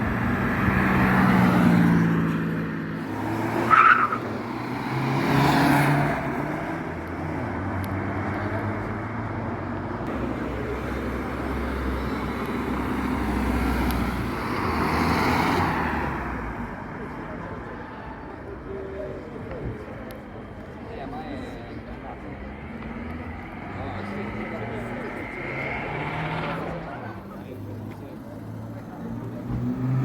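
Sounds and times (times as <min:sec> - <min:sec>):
car engines revving: 0:00.0 - 0:30.0.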